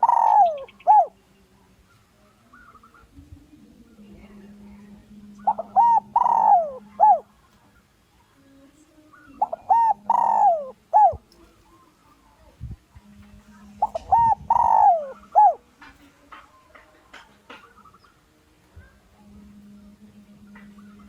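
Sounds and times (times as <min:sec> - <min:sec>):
dove cooing: 0:00.0 - 0:01.2, 0:02.3 - 0:12.3, 0:13.5 - 0:15.8.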